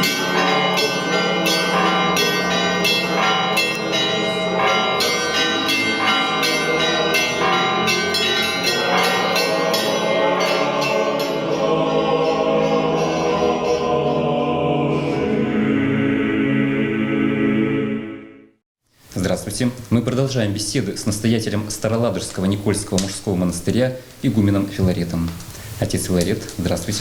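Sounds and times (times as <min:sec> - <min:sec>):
church bells ringing: 0:00.0 - 0:15.4
choir chanting: 0:00.0 - 0:18.6.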